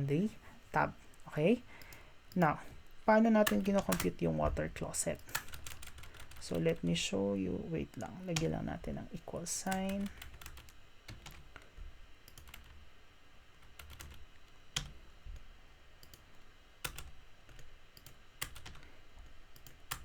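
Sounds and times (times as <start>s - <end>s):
keystrokes on computer keyboard: 3.4s - 6.8s, 9.7s - 12.8s, 13.6s - 20.0s.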